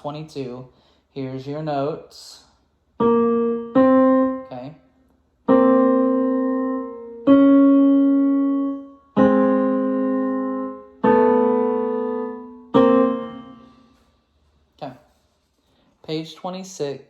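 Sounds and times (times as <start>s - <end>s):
piano chords: 3.0s - 14.2s.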